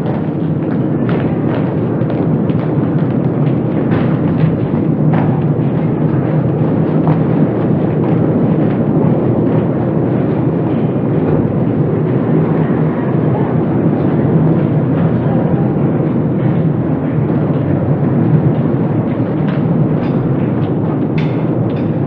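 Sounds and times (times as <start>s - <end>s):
escalator rumbling: 0.0s - 22.0s
faint clicks and knocks: 19.1s - 22.0s.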